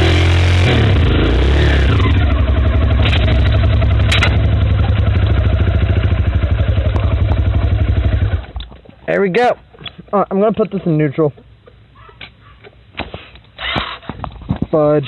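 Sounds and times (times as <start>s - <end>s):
dirt bike engine running: 0.0s - 8.6s.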